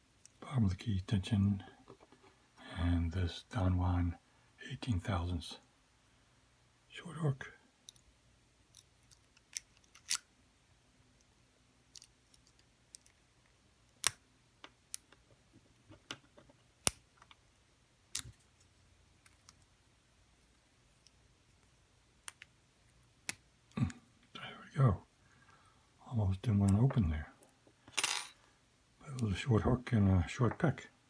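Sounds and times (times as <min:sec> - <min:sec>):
small metallic lock picking clicks: 0:08.7 - 0:10.3, 0:11.9 - 0:13.2, 0:13.9 - 0:14.2.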